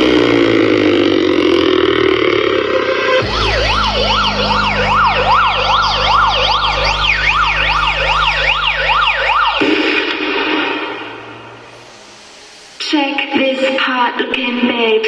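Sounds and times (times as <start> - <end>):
deep bass tone: 0.0 - 12.7
electronic siren sweeping: 2.7 - 12.8.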